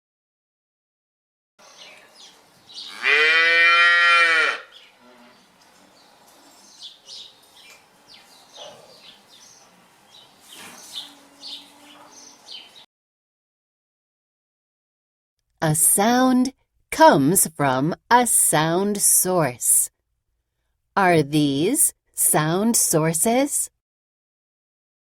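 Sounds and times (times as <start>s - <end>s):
cow mooing: 2.8s - 5.6s, 10.9s - 12.4s.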